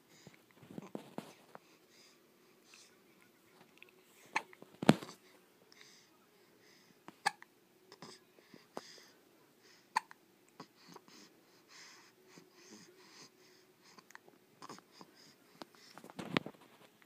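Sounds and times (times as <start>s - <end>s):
faint breathy sounds: 0.0s - 17.0s
baby hiccuping: 7.2s - 8.2s, 9.9s - 10.2s.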